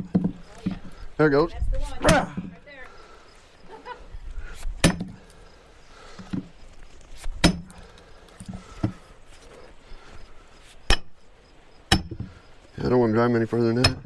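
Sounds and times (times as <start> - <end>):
maul striking steel wedge: 7.4 - 7.7, 10.9 - 11.2, 11.9 - 12.2.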